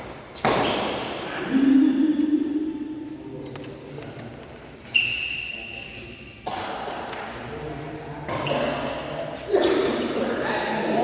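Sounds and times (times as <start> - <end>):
murmur of voices: 1.2 - 4.4, 6.5 - 11.0.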